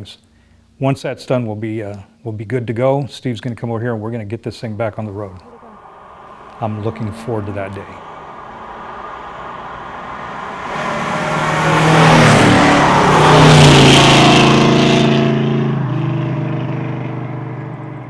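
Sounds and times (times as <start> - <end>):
car driving past: 5.1 - 18.0.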